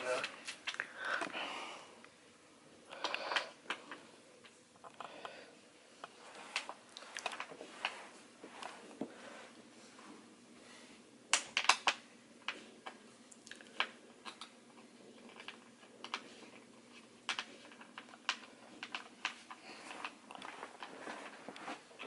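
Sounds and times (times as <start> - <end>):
chair parts clicking and knocking: 11.3 - 13.0, 13.7 - 22.0.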